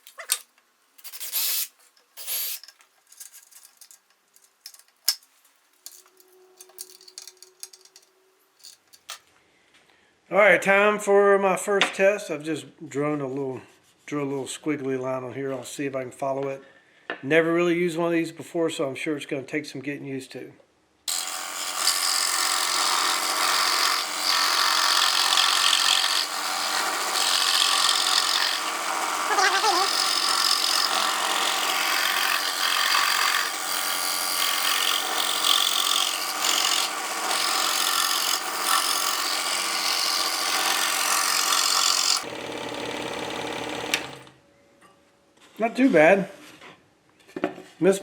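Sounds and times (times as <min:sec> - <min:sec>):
scroll saw cutting wood: 0:01.0 - 0:02.6, 0:21.1 - 0:44.3.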